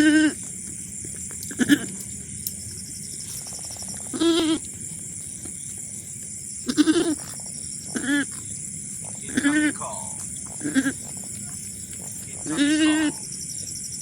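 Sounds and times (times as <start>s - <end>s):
goats bleating: 0.0s - 0.4s, 1.5s - 2.0s, 4.1s - 4.6s, 6.6s - 7.2s, 7.9s - 8.4s, 9.2s - 11.5s, 12.2s - 13.3s.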